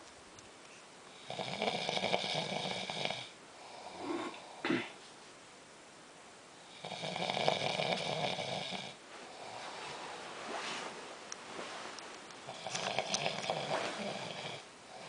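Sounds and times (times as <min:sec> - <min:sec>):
person snoring: 0:01.1 - 0:05.0, 0:06.6 - 0:10.2, 0:12.4 - 0:15.0
quiet breath: 0:03.2 - 0:05.2, 0:07.9 - 0:15.0.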